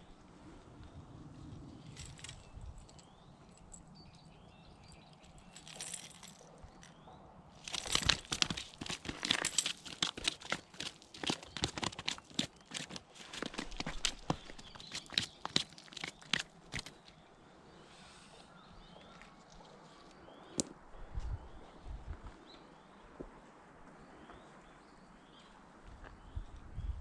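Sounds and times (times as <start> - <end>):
crunching footsteps: 5.3 - 6.9, 7.6 - 17.2
rustling: 7.6 - 17.1.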